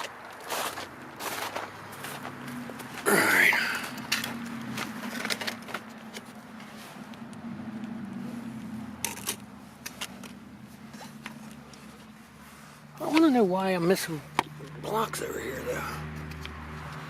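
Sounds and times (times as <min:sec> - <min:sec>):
rustling of things being handled: 0:00.0 - 0:13.6.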